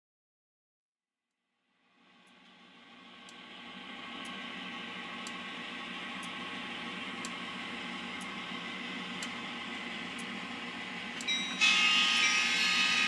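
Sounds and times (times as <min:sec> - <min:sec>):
faint ticking: 0:03.2 - 0:11.5.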